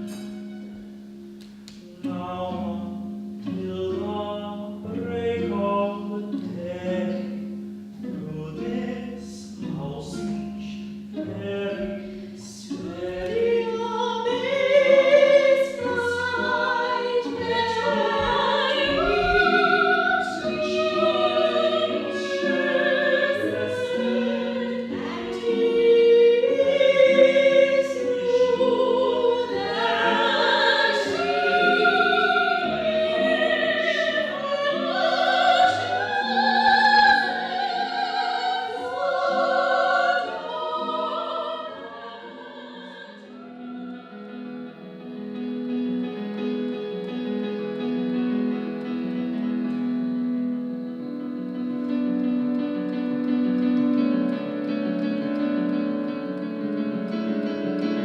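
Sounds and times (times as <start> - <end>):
classical instrumental music: 0.0 - 58.0
operatic singing voices: 1.9 - 45.2.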